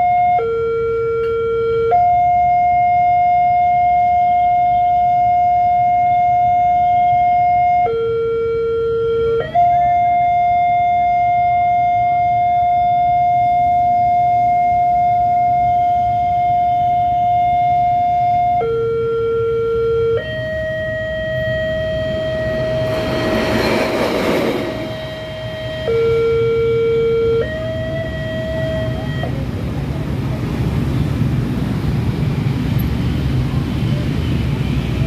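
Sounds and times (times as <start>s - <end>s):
level crossing warning siren: 0.0s - 29.4s
vehicle passing: 21.8s - 25.8s.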